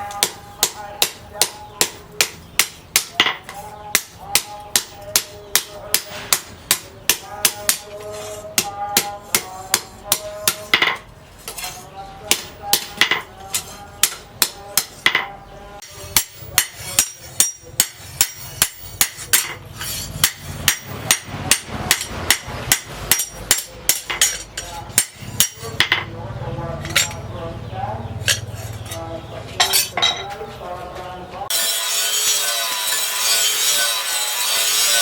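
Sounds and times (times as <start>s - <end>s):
hammer striking steel on anvil: 12.3s - 19.6s, 20.2s - 26.1s, 31.5s - 35.0s.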